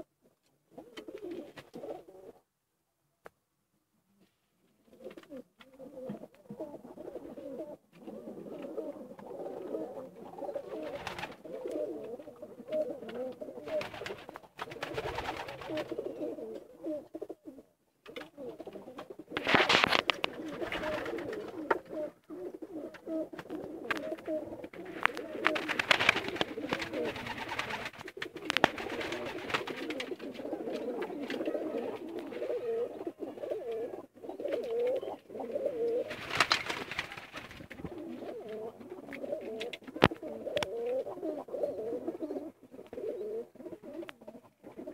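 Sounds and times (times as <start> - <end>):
pigeons cooing: 0.7 - 2.4, 4.8 - 44.9
rustling bursts: 24.0 - 30.2, 36.1 - 38.0.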